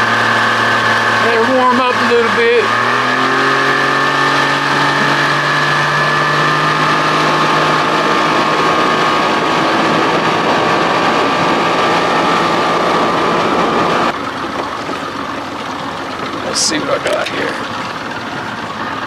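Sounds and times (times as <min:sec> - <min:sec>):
outboard motor running: 0:00.0 - 0:19.0.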